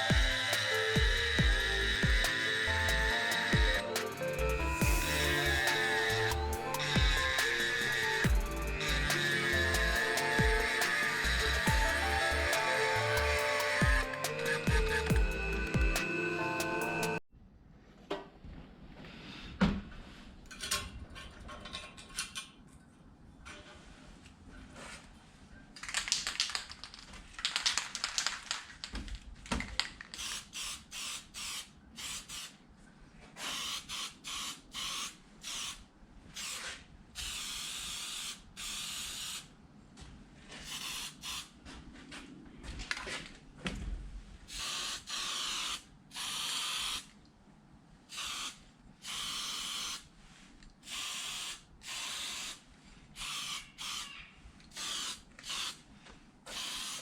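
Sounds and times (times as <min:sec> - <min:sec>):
aerosol paint spraying: 0:00.0 - 0:14.7.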